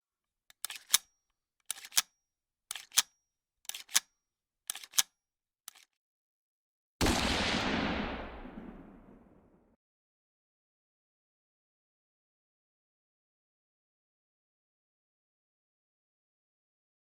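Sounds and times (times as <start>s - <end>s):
mechanical clicking: 2.7s - 3.1s, 4.7s - 5.1s
loud blast: 7.0s - 9.6s.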